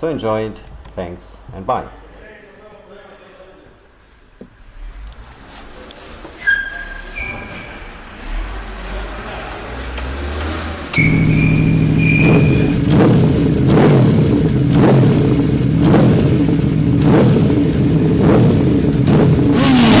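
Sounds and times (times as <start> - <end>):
scooter engine revving: 7.7 - 20.0.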